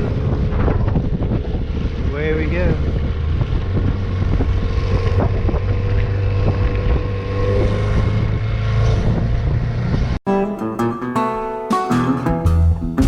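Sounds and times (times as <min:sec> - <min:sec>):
wind buffeting microphone: 0:00.0 - 0:10.2.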